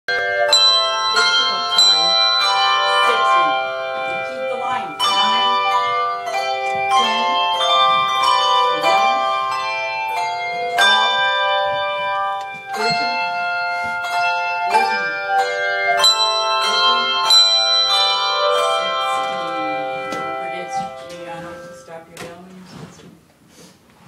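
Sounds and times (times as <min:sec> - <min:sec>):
bells ringing a tune: 0:00.1 - 0:22.2.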